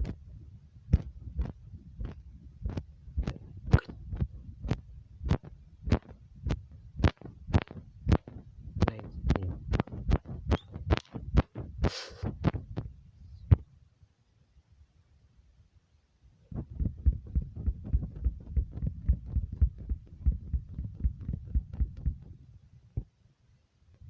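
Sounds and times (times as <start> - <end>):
low steady rumble: 0.0 - 11.8, 16.5 - 23.2
sharp taps or clicks: 0.9 - 11.6
short hiss: 11.8 - 12.3.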